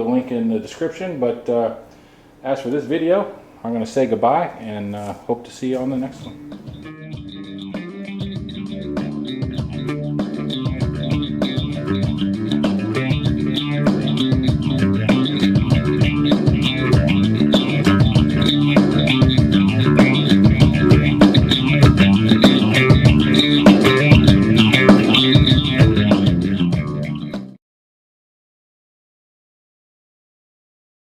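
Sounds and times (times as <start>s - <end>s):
background music with bass and guitar: 6.2s - 27.6s.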